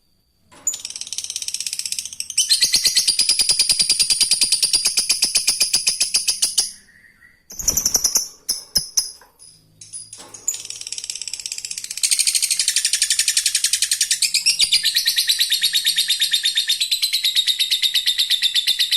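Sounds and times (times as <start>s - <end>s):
bird chirps: 0.7s - 18.9s
bird rapid chattering trill: 7.5s - 9.2s.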